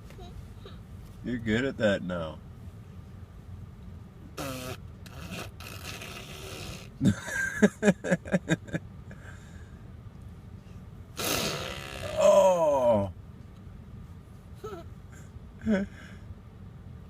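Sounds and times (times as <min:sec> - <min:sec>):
toddler blowing raspberries: 0:04.4 - 0:07.0, 0:11.2 - 0:12.3.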